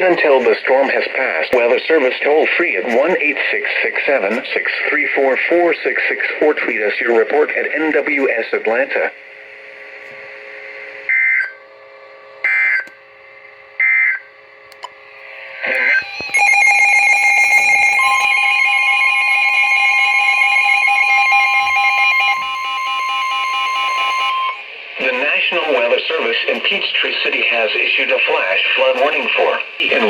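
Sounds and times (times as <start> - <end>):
loud steady electronic alarm: 11.0 - 11.6, 12.4 - 12.9, 13.8 - 14.3, 15.3 - 30.0
single-pitched warning alarm tone: 11.1 - 11.6, 12.4 - 12.9, 13.8 - 14.2, 15.8 - 24.7.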